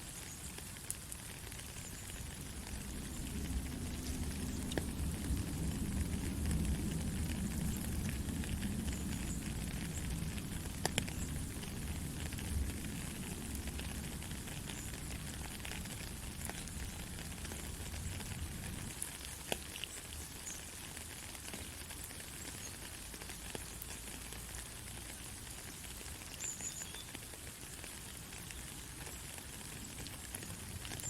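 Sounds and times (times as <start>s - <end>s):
steady rain hiss: 0.0s - 31.0s
taps of close raindrops: 0.0s - 31.0s
low rumble: 2.7s - 13.7s.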